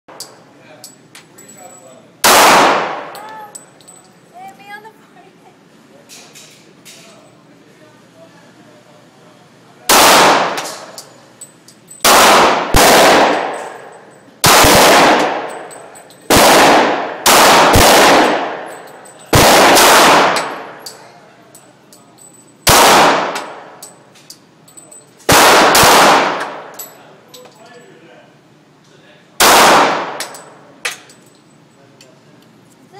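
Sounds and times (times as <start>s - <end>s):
gunshots with echo: 2.2s - 3.1s, 9.9s - 10.9s, 12.0s - 13.8s, 14.4s - 15.5s, 16.3s - 18.7s, 19.3s - 20.8s, 22.7s - 23.7s, 25.3s - 26.7s, 29.4s - 30.2s.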